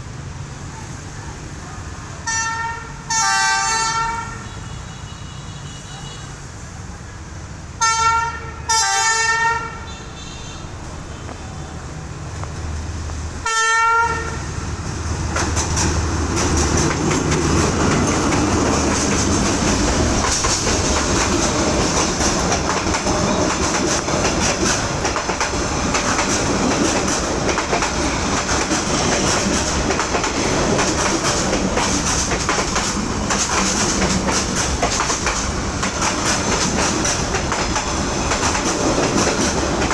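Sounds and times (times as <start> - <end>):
locomotive horn blasts: 2.2 - 6.3, 7.8 - 11.8, 13.4 - 14.6
locomotive engine rumbling: 10.6 - 39.9
train wheels clattering on rails: 14.1 - 39.9.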